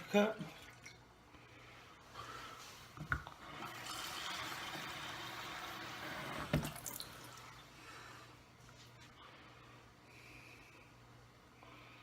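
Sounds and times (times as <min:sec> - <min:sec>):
water running into a cup: 0:03.2 - 0:07.6.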